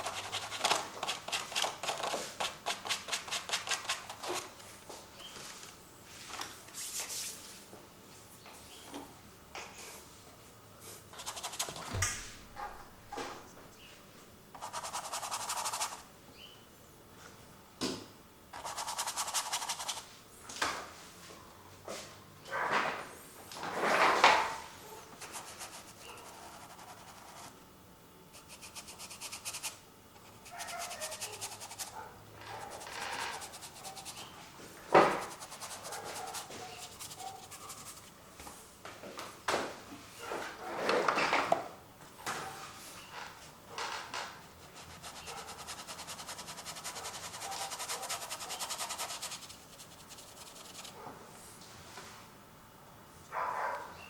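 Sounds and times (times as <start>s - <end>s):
paint rubbing and scraping strokes: 0.0s - 4.6s, 6.1s - 7.7s, 10.8s - 12.0s, 14.6s - 16.0s, 18.6s - 20.1s, 25.2s - 27.6s, 28.3s - 38.2s, 44.4s - 51.0s.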